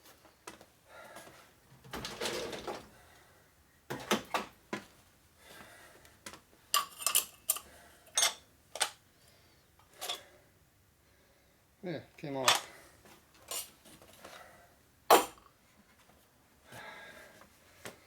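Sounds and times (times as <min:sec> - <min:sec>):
metal tools clinking and clanking: 0:06.8 - 0:08.9, 0:12.5 - 0:12.7, 0:13.5 - 0:13.7.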